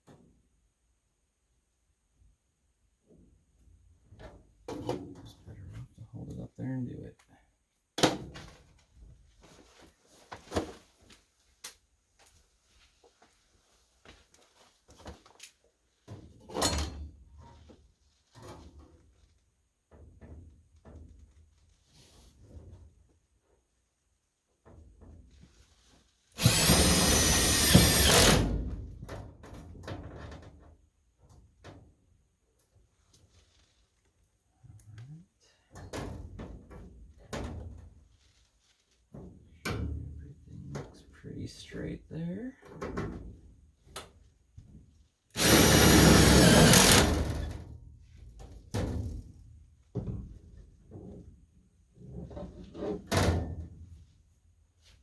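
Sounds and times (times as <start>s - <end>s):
power drill driving screw into metal: 26.4s - 28.8s, 45.4s - 47.6s.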